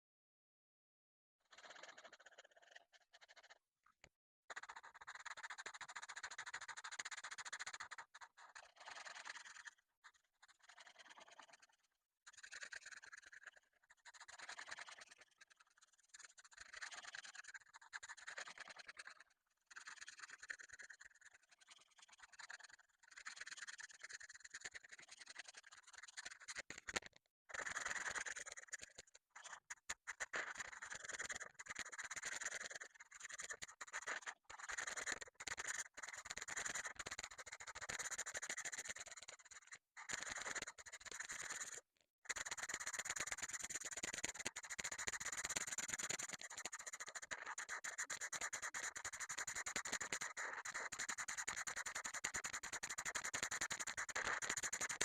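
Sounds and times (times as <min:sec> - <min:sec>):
colouring tool scratching paper: 0:47.5 - 0:50.2, 0:50.8 - 0:54.8.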